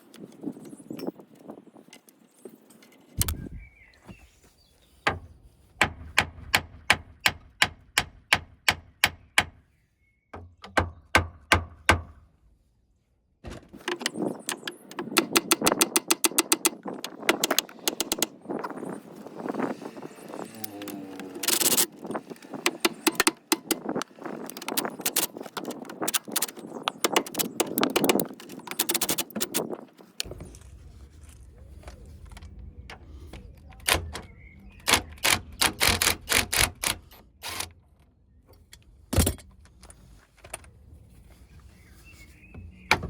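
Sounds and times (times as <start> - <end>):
hand ratchet clicking: 13.8 - 18.4, 19.1 - 29.8.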